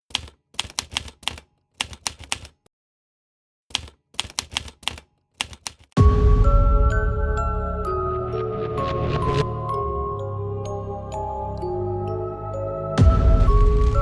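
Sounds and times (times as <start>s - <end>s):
typewriter keys clacking: 0.1s - 2.7s, 3.7s - 6.0s
music with deep boom and held tones: 6.0s - 14.0s.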